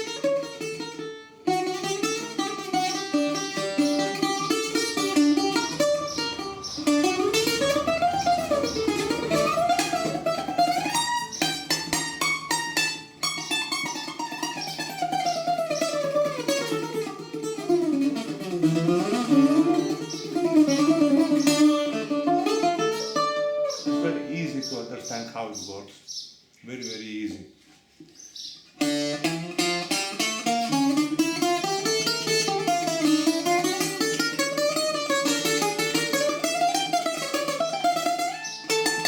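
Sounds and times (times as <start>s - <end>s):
bouzouki playing solo: 0.0s - 24.9s, 28.8s - 39.0s.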